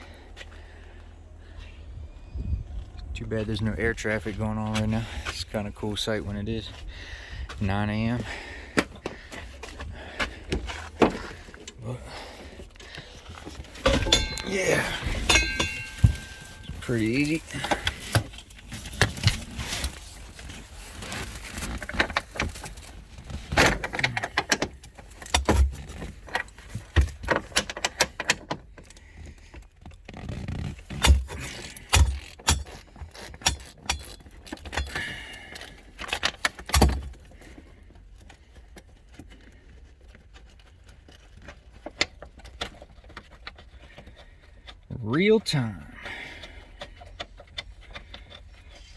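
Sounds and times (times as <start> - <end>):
wrench knocks and scrapes: 13.6 - 18.4
metal clinking and jangling: 13.7 - 18.2.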